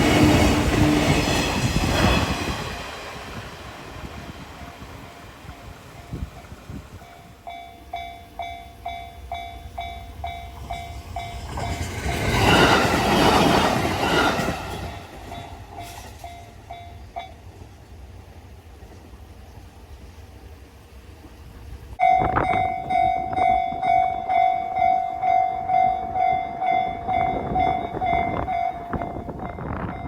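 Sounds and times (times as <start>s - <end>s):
train passing with loud rush: 0.0s - 30.0s
level crossing warning bell: 4.3s - 12.8s, 22.0s - 30.0s.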